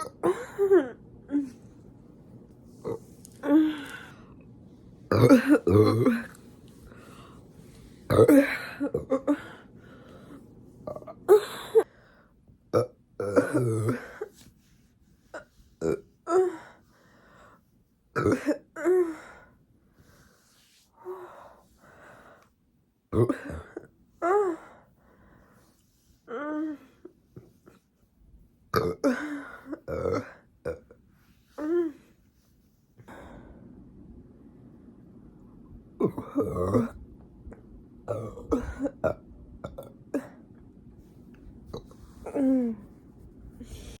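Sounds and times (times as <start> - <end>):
person breathing: 2.7 - 4.5, 6.3 - 8.1, 9.3 - 10.6, 11.4 - 12.4, 16.4 - 17.7, 19.1 - 22.6, 24.6 - 26.2, 33.0 - 33.8, 42.0 - 44.0
person burping: 5.1 - 6.4, 8.1 - 9.4, 28.7 - 29.3, 36.0 - 37.0, 38.1 - 40.4.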